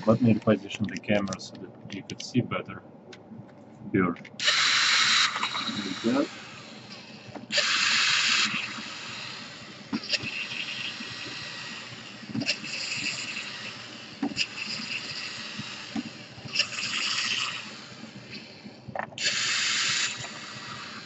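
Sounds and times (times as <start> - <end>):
power screwdriver whirring: 4.4 - 6.2, 6.8 - 9.3, 19.2 - 21.0.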